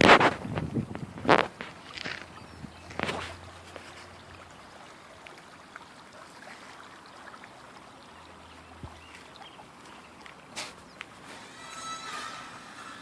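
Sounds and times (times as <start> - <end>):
floodwater rushing: 0.0 - 13.0.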